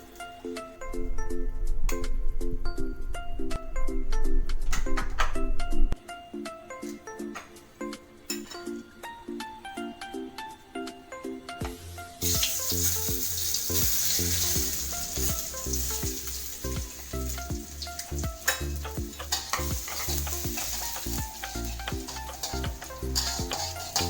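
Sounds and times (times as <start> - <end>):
background music: 0.0 - 24.0
food sizzling in hot oil: 11.8 - 24.0.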